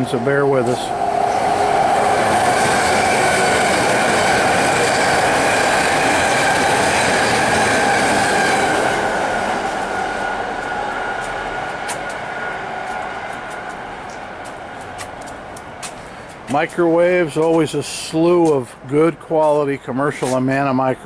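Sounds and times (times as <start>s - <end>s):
high-pitched train whine: 0.0s - 15.8s
train wheels rushing on rail: 0.0s - 20.5s.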